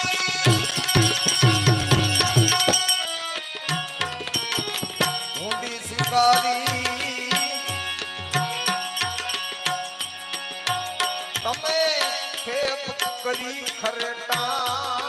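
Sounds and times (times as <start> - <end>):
hand drum beat: 0.0 - 3.0.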